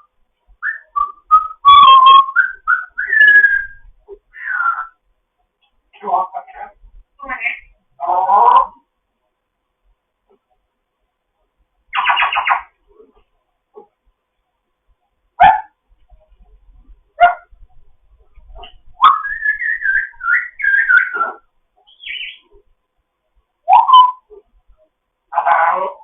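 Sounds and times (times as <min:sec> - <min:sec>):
parrot warbling whistle: 0:00.0 - 0:05.0, 0:19.0 - 0:22.4, 0:23.7 - 0:24.3.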